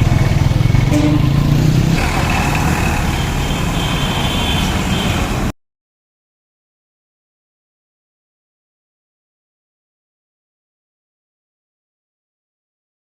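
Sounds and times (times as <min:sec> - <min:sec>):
motorcycle engine and road rumble: 0:00.0 - 0:05.5.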